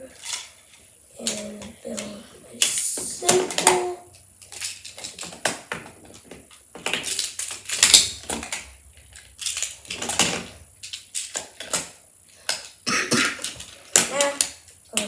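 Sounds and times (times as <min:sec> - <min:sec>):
plastic tiles clicking and clattering: 0:00.1 - 0:08.6, 0:09.4 - 0:15.0.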